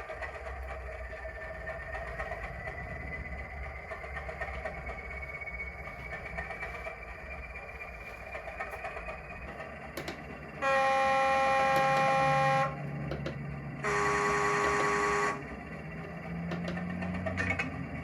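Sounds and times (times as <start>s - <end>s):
diesel engine idling: 0.0s - 18.0s
two-tone train horn: 10.5s - 15.7s.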